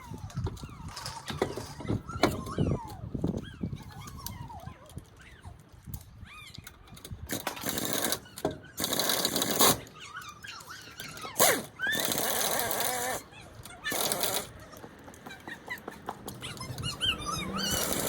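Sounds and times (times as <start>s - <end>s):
high squeals: 16.4s - 18.0s.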